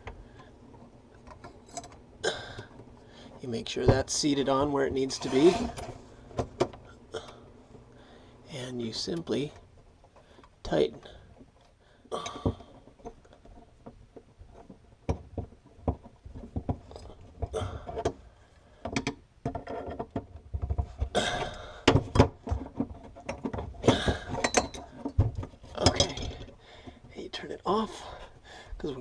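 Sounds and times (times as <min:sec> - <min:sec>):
wrenches clinking on metal fitting: 0:24.3 - 0:25.0, 0:25.8 - 0:26.5.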